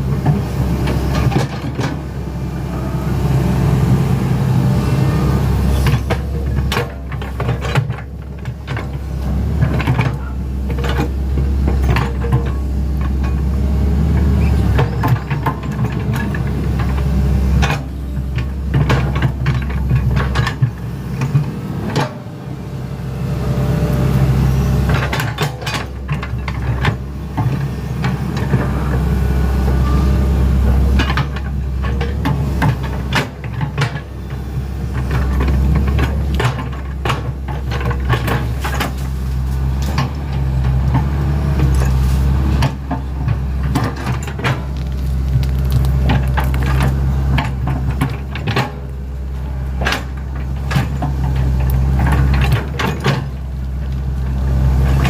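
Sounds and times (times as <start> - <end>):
excavator diesel engine running: 0.0 - 55.0
machine knocks and clanks: 5.8 - 22.3, 24.9 - 28.7, 30.9 - 39.2, 39.8 - 48.9, 49.7 - 53.4.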